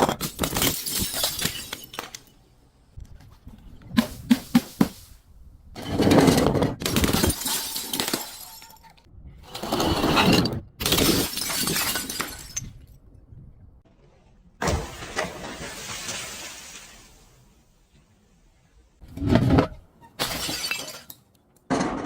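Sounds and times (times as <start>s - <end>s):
glass bottles shattering: 0.1s - 2.4s, 6.8s - 9.0s, 10.8s - 12.8s, 20.2s - 21.2s.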